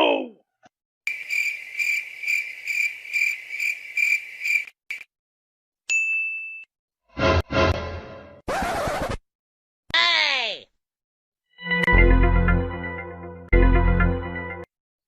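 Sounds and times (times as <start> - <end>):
cricket chirping: 1.1 - 5.1.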